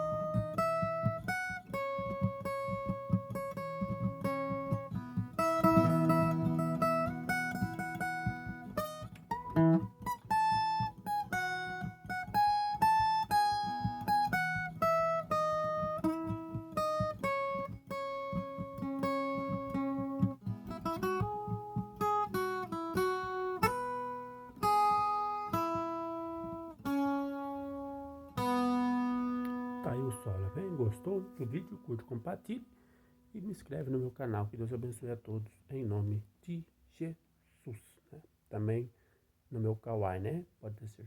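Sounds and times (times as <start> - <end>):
plucked guitar melody: 0.0 - 32.7.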